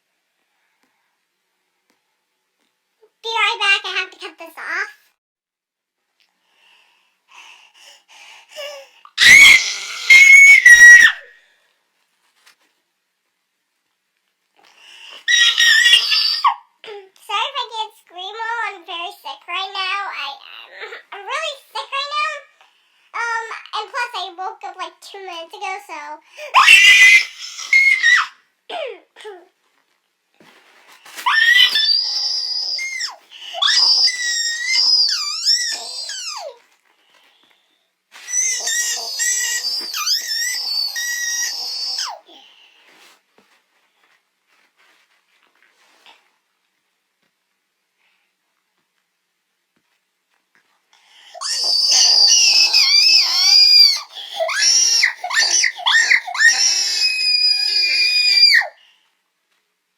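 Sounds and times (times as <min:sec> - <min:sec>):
high-pitched squealing screams: 0:09.2 - 0:11.3, 0:15.2 - 0:16.5, 0:26.5 - 0:28.4, 0:31.2 - 0:36.5, 0:38.2 - 0:42.4, 0:51.4 - 0:58.8.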